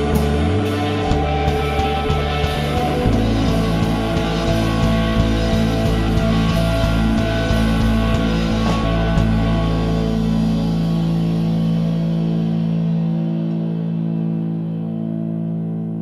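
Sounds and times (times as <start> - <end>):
held guitar chord ringing: 0.0 - 16.0
rock music with guitar and beat: 0.0 - 16.0.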